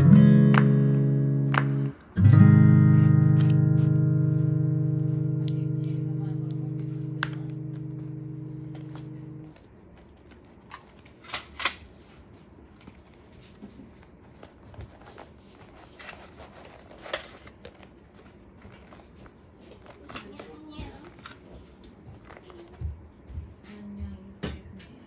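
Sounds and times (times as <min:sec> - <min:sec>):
held music chord: 0:00.0 - 0:09.5.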